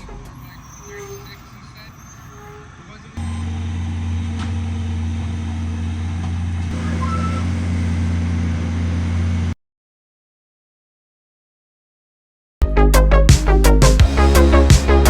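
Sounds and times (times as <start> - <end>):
heavy engine humming: 0.0 - 9.6.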